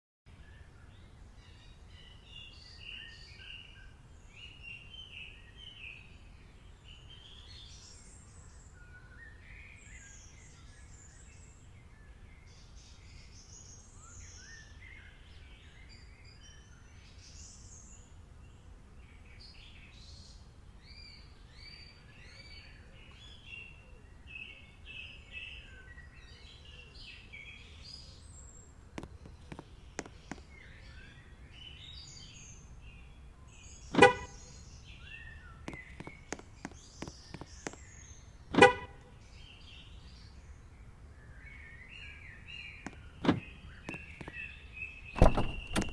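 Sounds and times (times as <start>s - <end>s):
birds chirping and twittering: 0.3s - 45.9s
sharp clicks: 45.2s - 45.9s.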